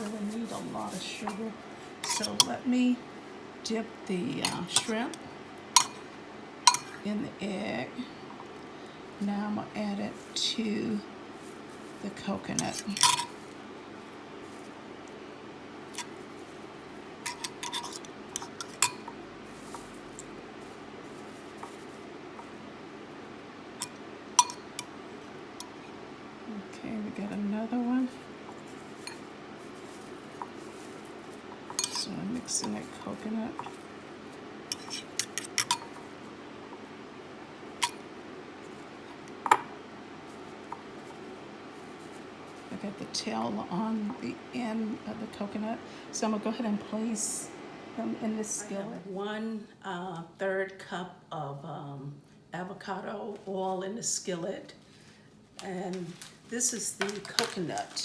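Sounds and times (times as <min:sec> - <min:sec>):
light clicks and scratches in bowl: 0:00.0 - 0:02.8, 0:04.3 - 0:07.2, 0:11.4 - 0:15.2, 0:15.9 - 0:22.6, 0:23.8 - 0:25.0, 0:25.6 - 0:26.0, 0:26.8 - 0:37.0, 0:37.8 - 0:39.7, 0:40.3 - 0:43.0
steady low hum: 0:00.0 - 0:57.0.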